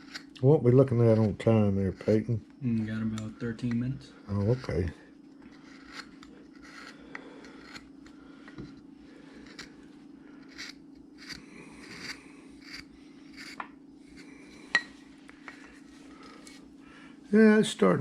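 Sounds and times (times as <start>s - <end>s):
carving gouge slicing wood: 0.0s - 2.2s, 5.5s - 8.8s, 9.4s - 9.8s, 10.4s - 14.3s
steady low hum: 0.0s - 18.0s.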